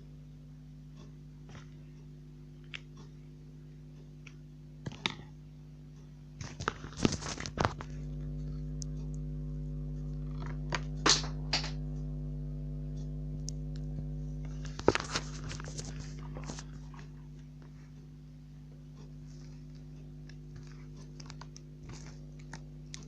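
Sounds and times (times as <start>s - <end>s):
low electrical hum: 0.0s - 23.0s
short crackles and clicks: 6.4s - 11.8s, 13.0s - 17.8s.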